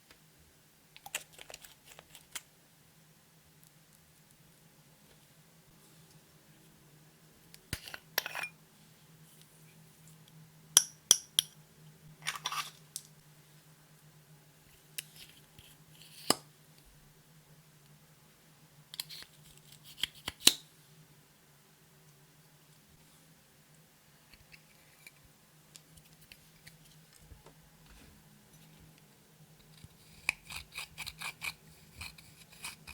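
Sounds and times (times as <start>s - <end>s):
faint steady hum: 0.0s - 32.9s.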